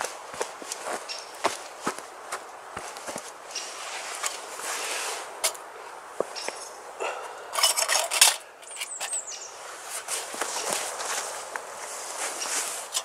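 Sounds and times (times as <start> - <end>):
camping gear clicks and knocks: 2.8 - 4.7, 5.4 - 13.0
scraping and rattling: 7.5 - 9.2.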